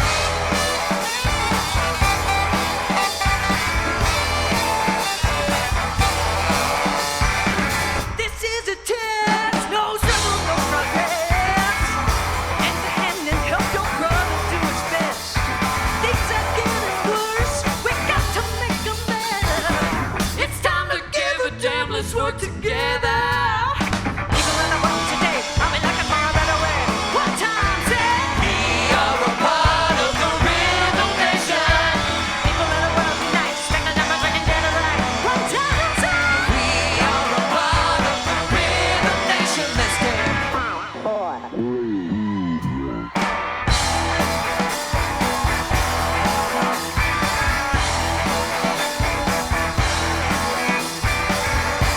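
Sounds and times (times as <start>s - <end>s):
live soul band playing: 0.0s - 8.2s, 24.4s - 40.6s, 43.2s - 51.9s
wavering lead line: 0.0s - 8.2s
person singing: 8.1s - 23.8s, 24.4s - 43.2s.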